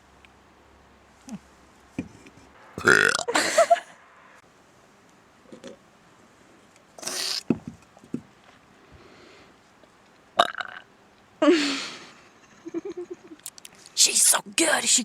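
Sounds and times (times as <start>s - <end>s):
woman burping loudly: 2.8s - 3.8s.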